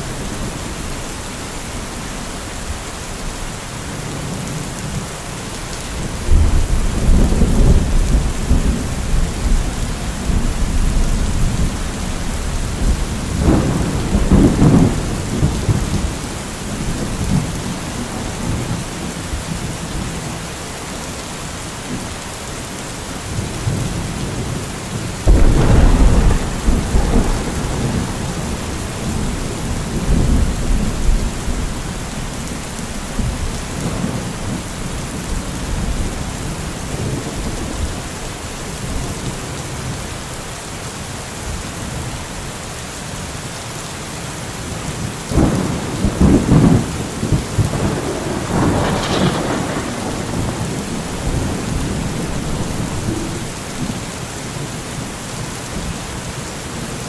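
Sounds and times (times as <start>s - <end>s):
steady rain falling: 0.0s - 57.0s
rolling thunder: 6.1s - 20.1s, 25.2s - 39.6s, 45.3s - 54.7s.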